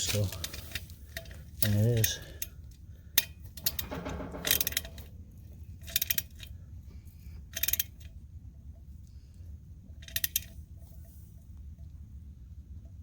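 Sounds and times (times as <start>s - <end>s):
wrench clicking on metal nuts: 0.3s - 2.5s, 3.2s - 5.1s, 5.8s - 6.5s, 7.5s - 8.1s, 10.0s - 10.5s.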